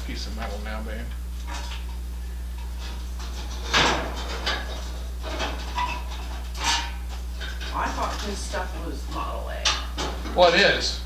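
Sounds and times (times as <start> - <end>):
steady low hum: 0.0 - 11.0
sheet metal knocks and scrapes: 2.8 - 6.9.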